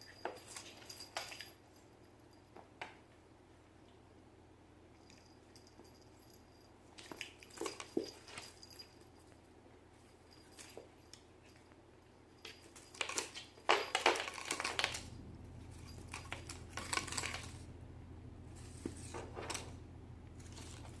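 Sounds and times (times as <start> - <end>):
steady low hum: 13.6 - 21.0
cat scuffling and rustling: 18.4 - 21.0.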